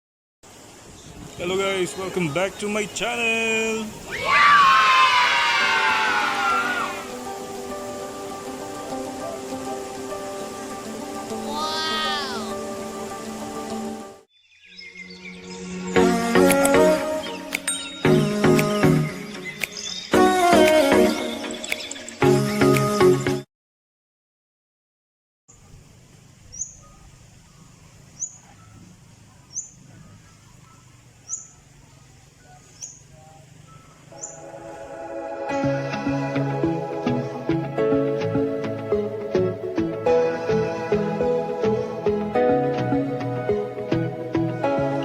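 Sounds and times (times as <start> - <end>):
music with sustained notes: 5.6 - 23.4, 33.6 - 45.0
bird chirping: 14.3 - 16.1, 17.1 - 20.4, 21.2 - 22.4, 26.4 - 34.9.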